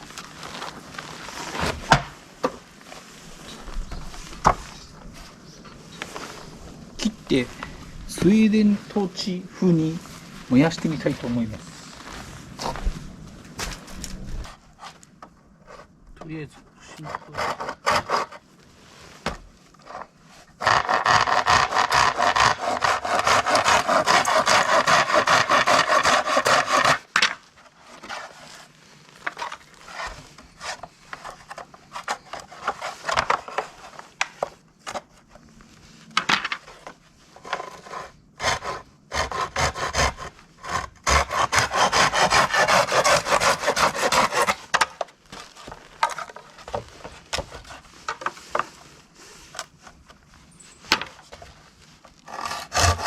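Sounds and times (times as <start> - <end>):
saw cutting bamboo: 17.0 - 18.4, 20.6 - 27.1, 37.4 - 44.8, 52.2 - 53.0
bamboo cane knocks and scrapes: 44.2 - 48.9, 50.8 - 51.6.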